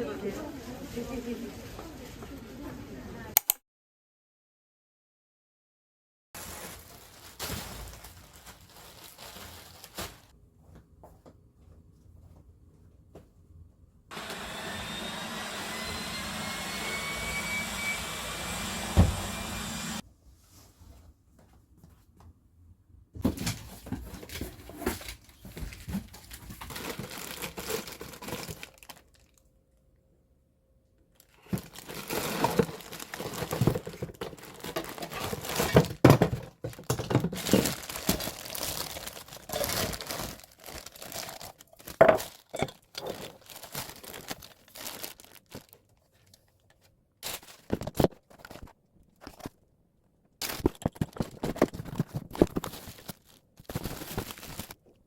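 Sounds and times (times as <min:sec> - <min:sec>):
packaging crinkling and tearing: 0:06.4 - 0:10.3, 0:24.3 - 0:29.4, 0:31.2 - 0:49.6, 0:50.4 - 0:54.9.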